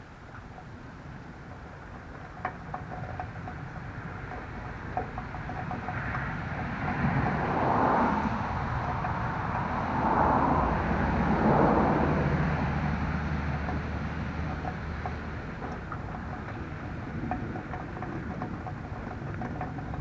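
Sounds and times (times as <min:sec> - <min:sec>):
low steady engine hum: 0:00.0 - 0:20.0
road vehicles passing: 0:03.0 - 0:20.0.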